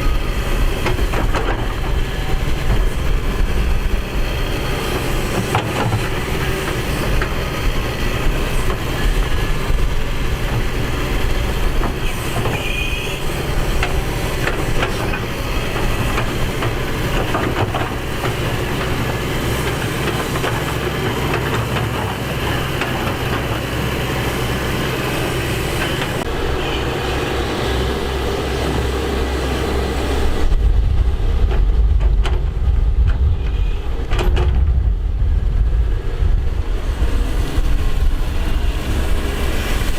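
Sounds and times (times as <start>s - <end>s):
excavator diesel engine hum: 0.0s - 39.9s
deep loud rumble: 30.1s - 39.3s.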